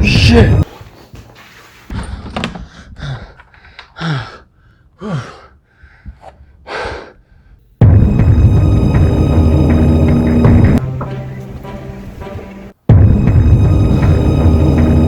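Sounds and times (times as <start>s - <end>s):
man gasping and breathing heavily: 1.9s - 7.7s.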